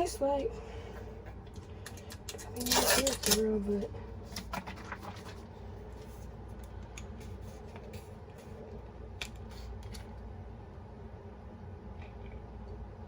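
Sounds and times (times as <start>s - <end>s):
steady low hum: 0.0s - 13.0s
clicks and scratches of handling: 0.9s - 10.2s.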